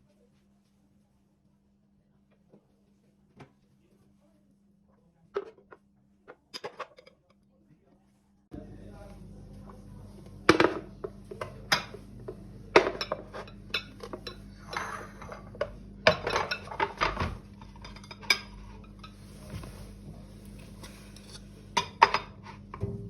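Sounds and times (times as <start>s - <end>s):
dishes and cutlery clattering: 6.6s - 7.2s, 10.5s - 12.1s, 12.7s - 19.4s, 20.7s - 23.0s.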